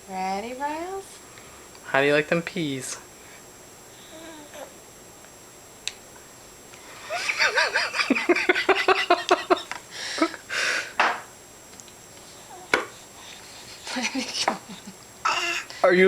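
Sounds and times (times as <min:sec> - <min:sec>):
baby babbling: 0:04.0 - 0:04.7, 0:15.3 - 0:15.7.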